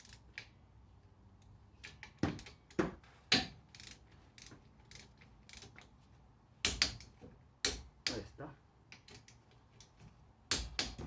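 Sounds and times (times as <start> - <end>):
hand tools clicking and knocking on metal: 6.6 - 8.3, 8.9 - 11.0.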